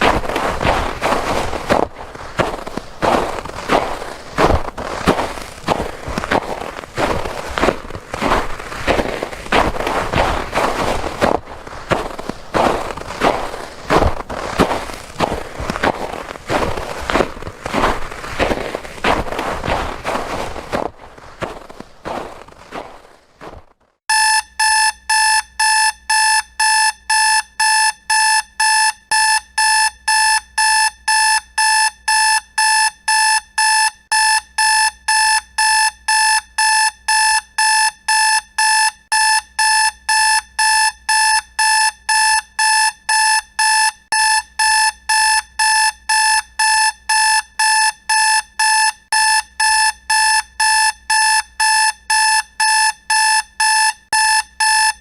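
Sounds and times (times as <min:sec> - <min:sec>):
alarm clock beeping: 0:24.1 - 0:55.0.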